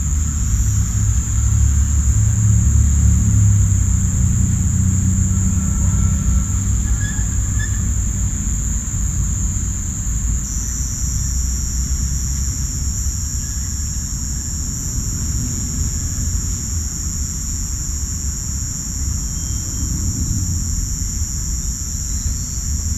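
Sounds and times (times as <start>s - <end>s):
low rumble: 0.0s - 10.5s
crickets and cicadas chorus: 0.0s - 22.9s.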